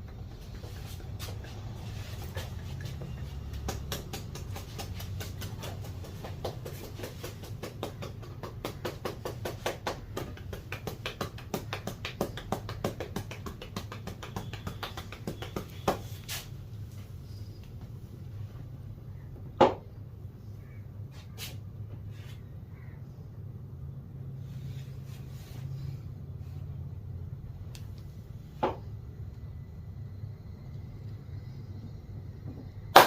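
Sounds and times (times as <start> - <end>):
rapid hand tapping massage: 0.0 - 16.4.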